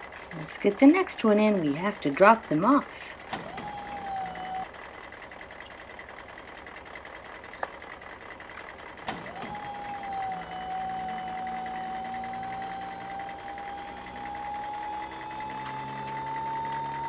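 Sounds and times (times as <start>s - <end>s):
small motor whining: 3.3s - 5.8s, 8.6s - 17.0s.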